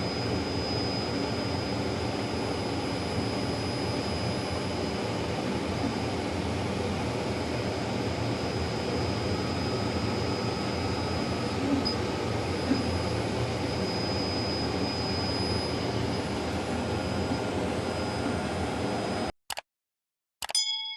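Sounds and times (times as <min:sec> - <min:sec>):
laser printer running: 0:00.0 - 0:19.3.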